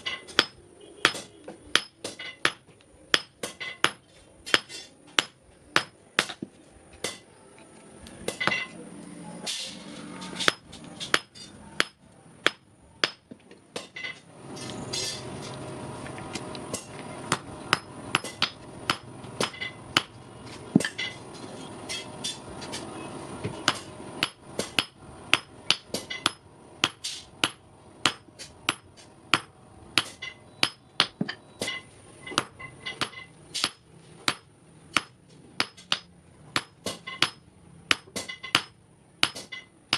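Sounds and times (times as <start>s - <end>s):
hammer striking metal on anvil: 0.0s - 6.4s, 7.0s - 7.3s, 10.4s - 14.2s, 16.7s - 20.2s, 23.6s - 39.7s.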